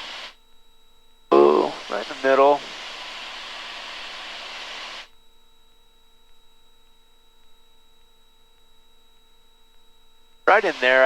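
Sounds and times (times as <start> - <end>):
electronic hum with high whine: 0.0 - 11.0.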